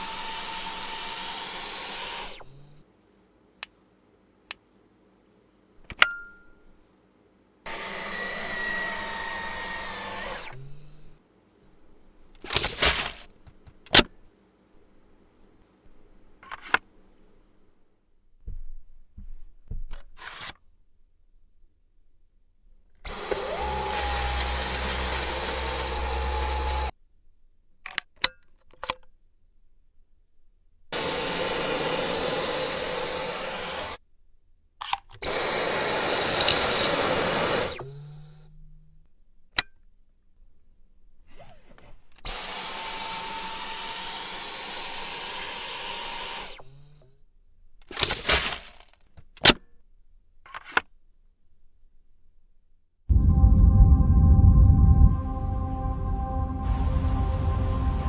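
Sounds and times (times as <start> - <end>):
vacuum cleaner running: 7.7 - 10.4, 23.1 - 26.9, 31.0 - 34.0, 35.3 - 37.8.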